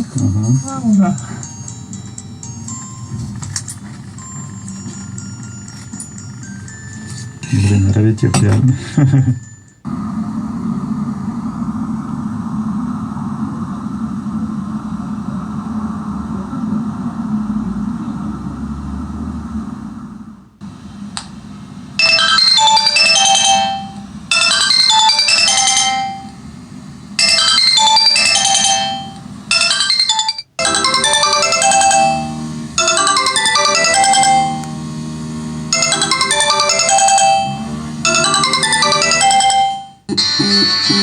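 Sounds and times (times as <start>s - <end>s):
synthesized phone ringtone: 0.0s - 3.5s, 4.1s - 9.8s, 22.0s - 26.4s, 27.2s - 41.0s.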